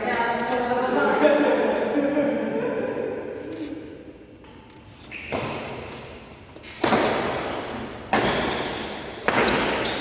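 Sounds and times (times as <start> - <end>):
racket hitting shuttlecock: 5.3 - 10.0.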